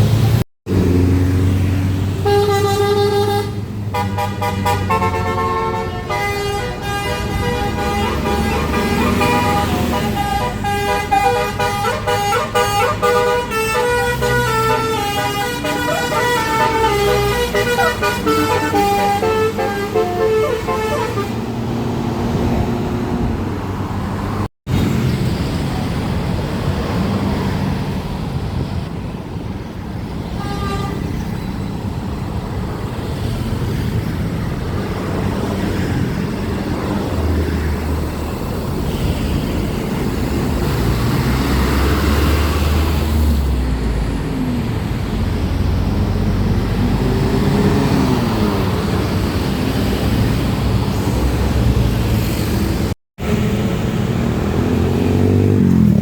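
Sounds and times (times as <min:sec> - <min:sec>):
bus engine rumble: 0:00.0 - 0:56.0
multi-tone air horns playing tunes: 0:02.2 - 0:21.6.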